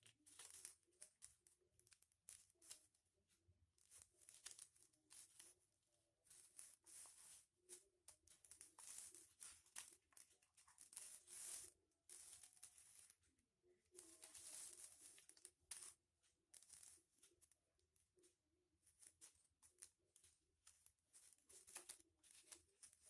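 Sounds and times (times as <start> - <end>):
foil paper crinkling: 0.0 - 1.4, 6.3 - 13.1, 13.9 - 16.0, 21.2 - 23.0.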